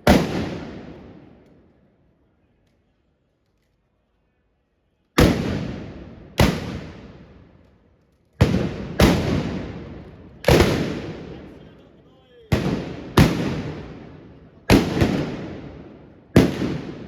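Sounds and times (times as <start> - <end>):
loud gunshots with echo: 0.0 - 1.3, 5.2 - 7.4, 8.4 - 11.6, 12.5 - 17.0.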